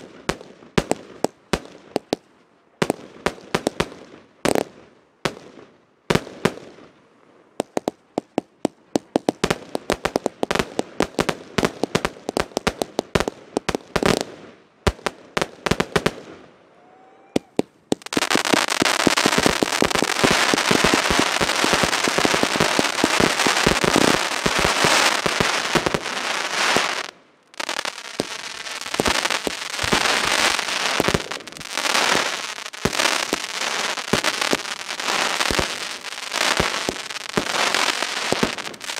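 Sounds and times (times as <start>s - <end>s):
fireworks crackling: 7.6s - 16.5s, 17.4s - 38.9s
fireworks bangs: 17.3s - 38.9s.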